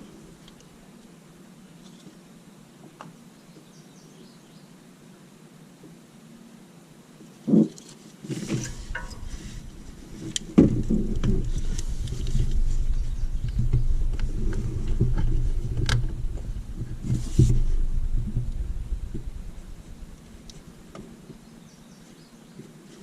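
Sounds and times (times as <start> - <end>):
thump: 8.4 - 21.1.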